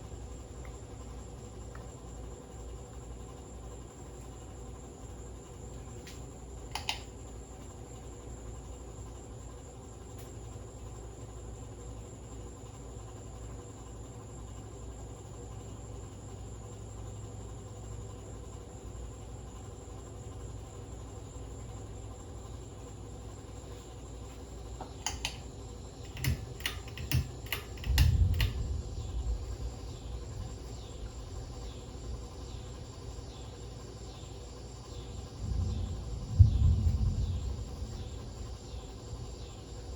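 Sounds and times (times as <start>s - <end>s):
ceiling fan motor hum: 0.0s - 39.9s
sharp clicks: 6.0s - 7.1s, 24.8s - 28.7s.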